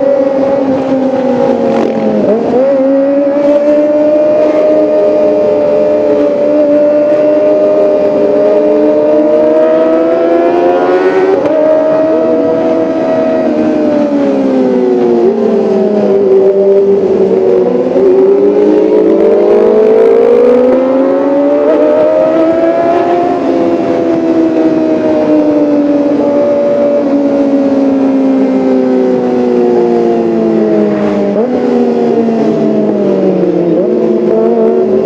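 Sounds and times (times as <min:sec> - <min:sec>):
motorcycle engine at high revs: 0:00.0 - 0:35.0.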